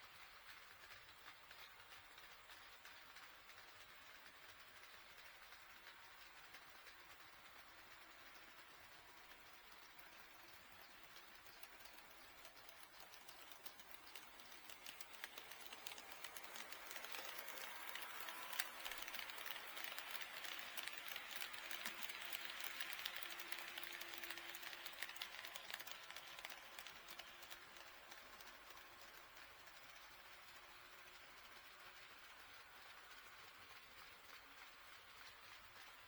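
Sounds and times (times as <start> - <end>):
model train wheels rattling: 0.0 - 36.0.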